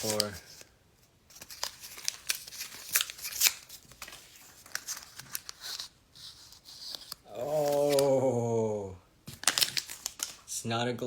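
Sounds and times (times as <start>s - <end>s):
plastic packet crinkling and tearing: 0.0s - 0.7s, 1.3s - 5.9s, 6.6s - 8.2s, 9.3s - 10.5s.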